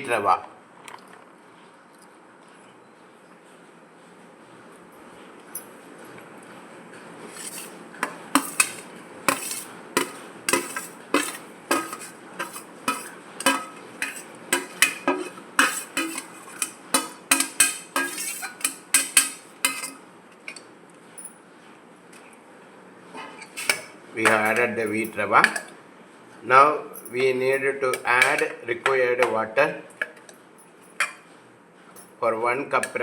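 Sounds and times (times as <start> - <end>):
metal spoon scraping metal pot: 7.3 - 20.6, 23.4 - 24.6, 25.4 - 25.7, 28.0 - 28.6.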